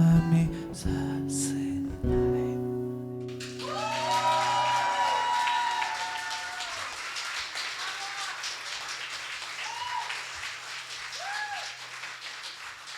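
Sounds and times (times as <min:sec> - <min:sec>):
acoustic guitar notes: 0:00.0 - 0:04.0
audience applauding: 0:03.3 - 0:12.9.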